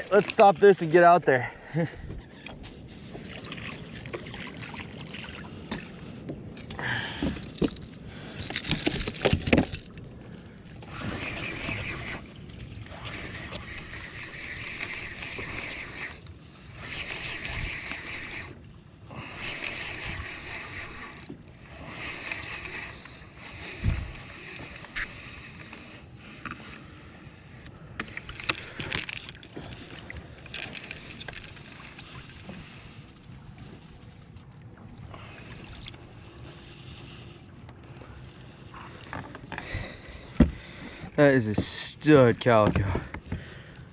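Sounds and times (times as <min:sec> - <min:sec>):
water rushing along hull: 0:00.0 - 0:43.9.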